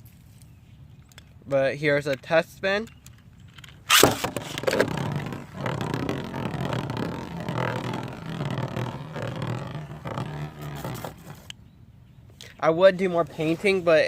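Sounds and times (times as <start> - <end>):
spinning top launched with rip: 3.9 - 11.5
spinning top rattling: 3.9 - 11.5.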